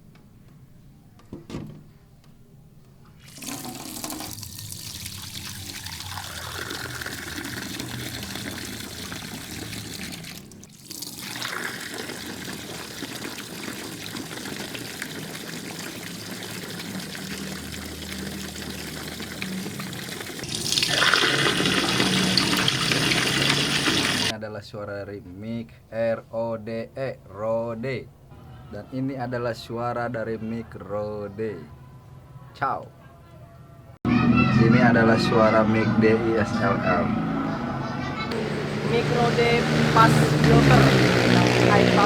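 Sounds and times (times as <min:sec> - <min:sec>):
running water rushing: 0:03.2 - 0:24.3.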